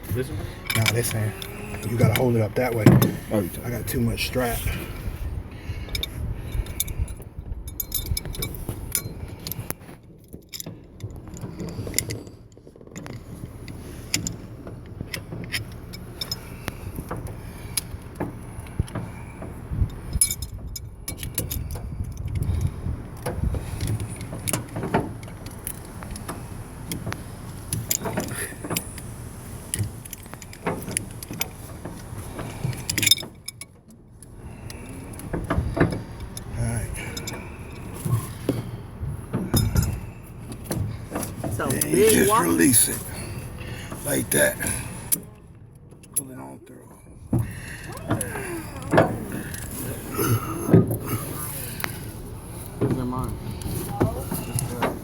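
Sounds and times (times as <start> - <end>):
metallic clinks and rattles: 5.9 - 9.6.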